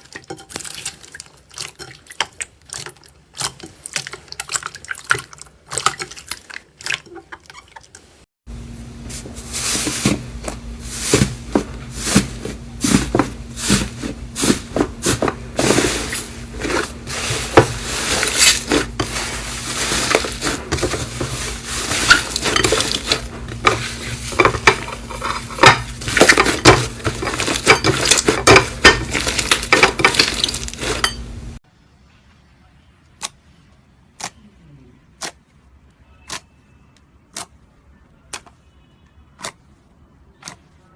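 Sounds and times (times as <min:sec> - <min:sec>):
utensil clinking against dish: 0:11.0 - 0:31.4.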